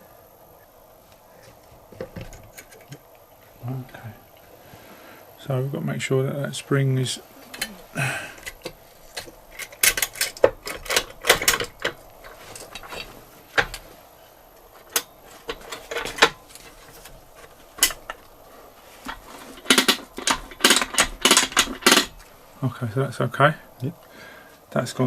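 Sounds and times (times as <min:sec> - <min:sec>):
metallic clicks and knocks: 0:08.4 - 0:13.9, 0:14.6 - 0:18.3, 0:19.0 - 0:22.3.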